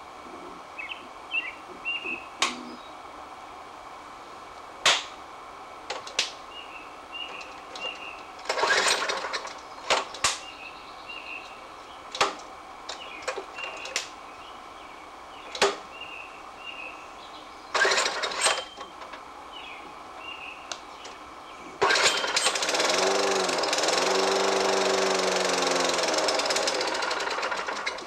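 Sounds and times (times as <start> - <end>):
recoil starter rasping whirr: 7.7 - 10.4, 17.7 - 19.2, 21.8 - 28.0
sharp clicks: 9.4 - 10.4.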